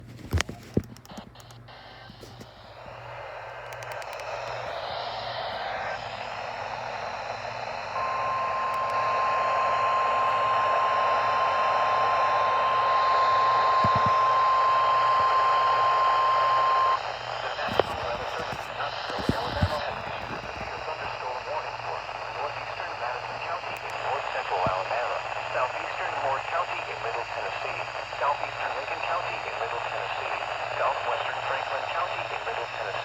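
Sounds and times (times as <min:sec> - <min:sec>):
radio static hiss: 0:00.0 - 0:33.0
clicks: 0:00.2 - 0:06.1
steady warning alarm tone: 0:01.8 - 0:19.9.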